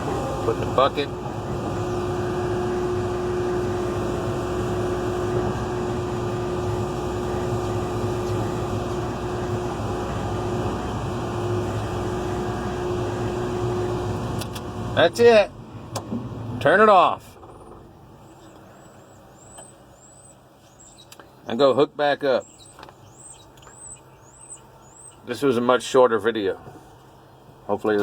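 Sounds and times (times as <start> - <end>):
excavator diesel engine running: 0.0 - 21.8
steady whine: 0.0 - 28.0.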